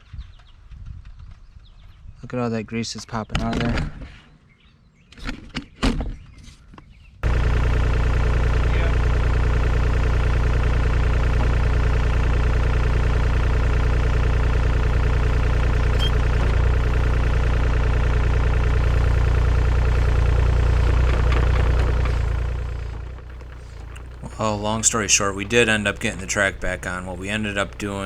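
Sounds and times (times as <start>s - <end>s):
diesel engine idling: 7.2s - 28.0s.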